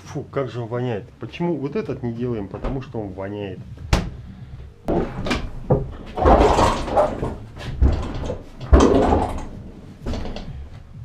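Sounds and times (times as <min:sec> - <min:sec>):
scraping and rattling: 0:04.9 - 0:10.7
handling knocks and clunks: 0:04.9 - 0:10.9.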